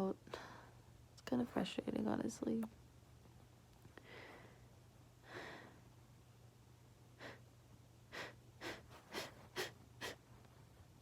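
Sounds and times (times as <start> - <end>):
faint breaths: 3.9 - 5.9.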